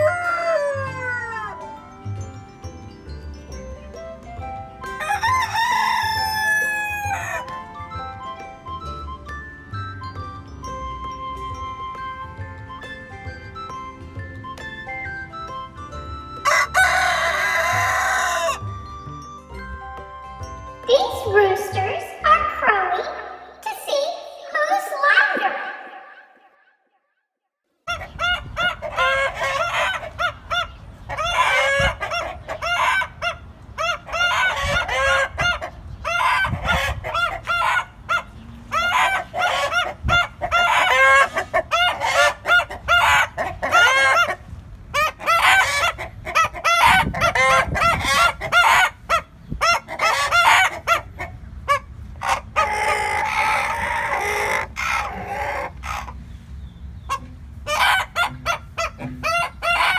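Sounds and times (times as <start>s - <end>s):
chickens clucking: 0.0s - 2.4s, 4.8s - 8.1s, 16.4s - 18.7s, 27.9s - 59.9s
roosters crowing: 0.0s - 2.4s, 4.4s - 7.8s, 16.2s - 18.9s, 27.9s - 59.9s.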